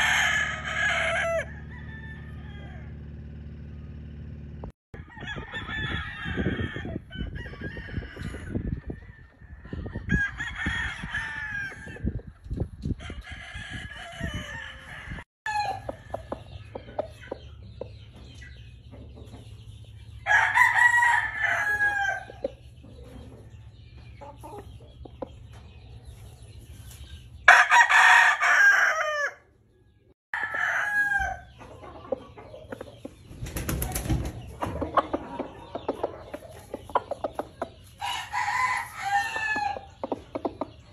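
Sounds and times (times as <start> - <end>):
roosters crowing: 0.0 - 4.4, 5.0 - 12.3, 12.9 - 17.3, 20.1 - 23.7, 27.4 - 29.6, 30.4 - 32.5, 37.7 - 40.3
chickens clucking: 11.7 - 20.4, 21.4 - 27.5, 30.6 - 40.9.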